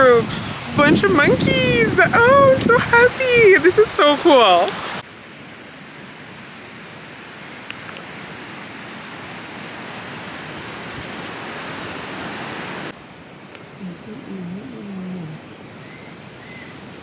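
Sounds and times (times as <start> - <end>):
ocean surf washing: 0.0 - 5.1, 6.1 - 13.0.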